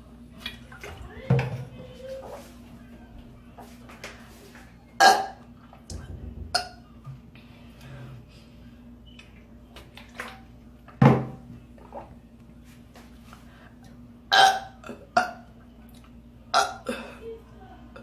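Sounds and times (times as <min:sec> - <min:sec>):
woman burping: 0:14.3 - 0:15.4, 0:16.5 - 0:17.4.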